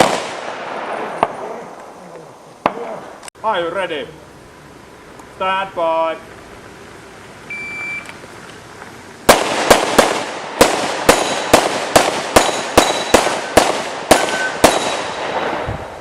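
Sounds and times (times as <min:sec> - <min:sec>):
pistol shots with echo: 0:00.0 - 0:01.7, 0:09.3 - 0:15.7.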